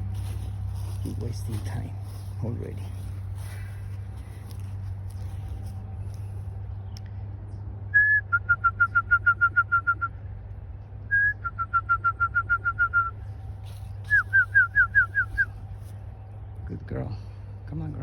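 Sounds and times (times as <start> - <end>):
whistled call: 7.9 - 10.2, 11.1 - 13.2, 14.1 - 15.6.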